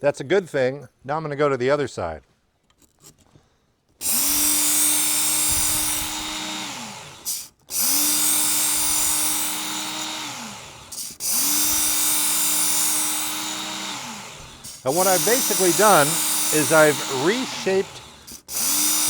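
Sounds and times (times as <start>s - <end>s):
motor humming: 4.0s - 19.0s
belt grinding knife steel: 10.9s - 19.0s.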